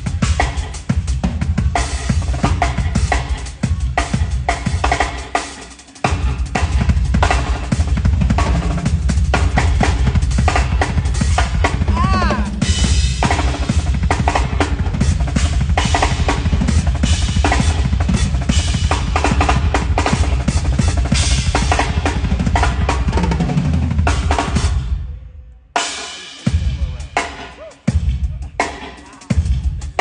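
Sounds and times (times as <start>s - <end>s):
drum kit played fast: 0.0s - 25.0s, 25.8s - 30.0s
heavy kick drum: 6.1s - 24.8s.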